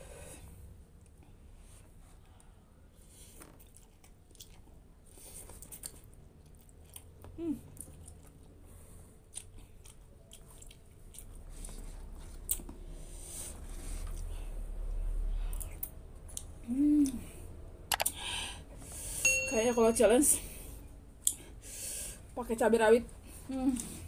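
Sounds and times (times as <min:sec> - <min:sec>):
person chewing noodles: 0:03.0 - 0:14.6.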